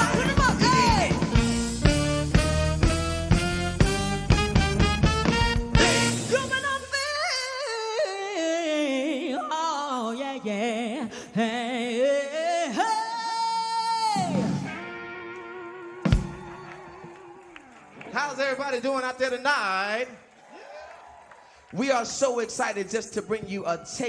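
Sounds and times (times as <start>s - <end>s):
person singing wordless ad-lib: 0.0s - 1.6s, 5.8s - 14.5s
soul band playing: 0.0s - 7.2s, 14.1s - 18.2s.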